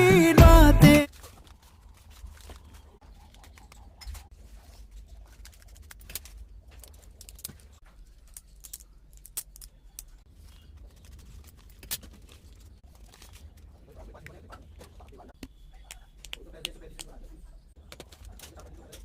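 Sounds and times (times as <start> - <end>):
small objects clicking and rustling: 4.9 - 13.8.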